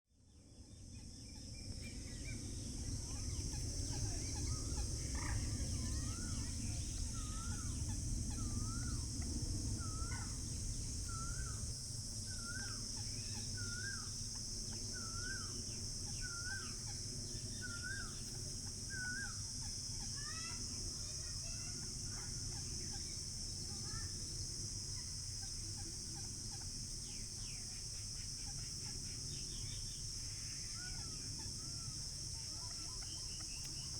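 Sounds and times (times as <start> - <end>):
high insect drone: 0.2 - 33.9
scattered bird calls: 0.9 - 33.9
low rumble: 2.5 - 12.3.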